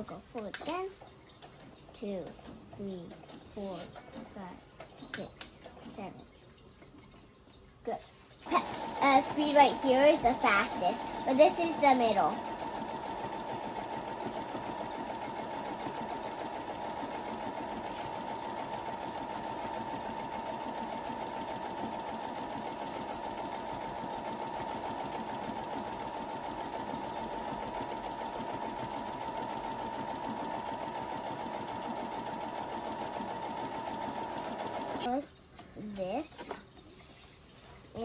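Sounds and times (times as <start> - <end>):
sewing machine stitching: 8.4 - 35.1.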